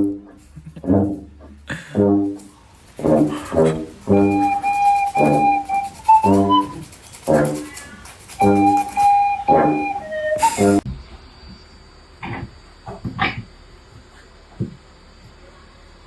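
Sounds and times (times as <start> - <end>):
high whistle-like tone: 4.0 - 7.0, 8.4 - 11.0
low buzzy wind instrument note: 8.4 - 10.9.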